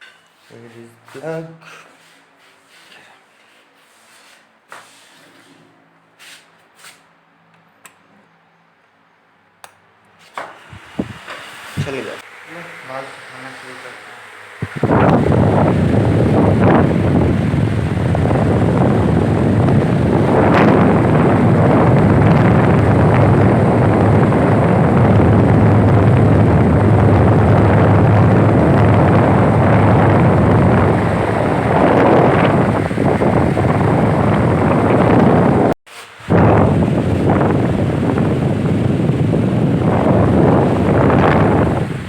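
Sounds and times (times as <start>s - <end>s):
fan low hum: 0.0s - 42.0s
fan airflow buffeting microphone: 0.4s - 7.3s, 10.1s - 42.0s.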